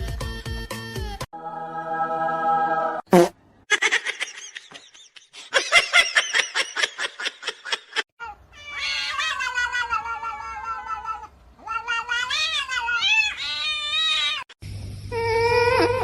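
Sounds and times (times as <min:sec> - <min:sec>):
cat meowing: 0:08.2 - 0:14.5.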